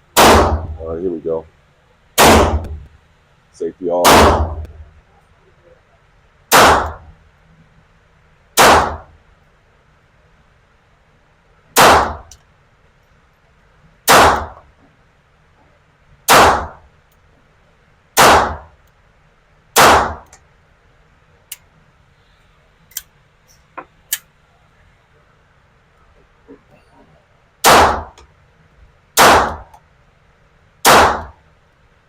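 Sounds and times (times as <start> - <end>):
rifle shots: 0.2 - 1.0, 2.2 - 2.9, 4.0 - 4.9, 6.5 - 7.1, 8.6 - 9.1, 11.8 - 12.3, 14.1 - 14.7, 16.3 - 16.9, 18.2 - 18.8, 19.8 - 20.3, 27.6 - 28.2, 29.2 - 29.8, 30.8 - 31.4
faint sharp clicks: 21.5 - 21.7, 22.9 - 24.3.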